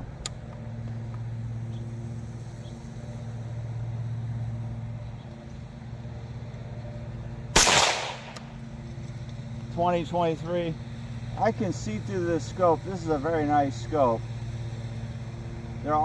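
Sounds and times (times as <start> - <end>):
lawn mower engine humming: 0.0 - 16.0
rifle shot with echo: 7.6 - 8.6.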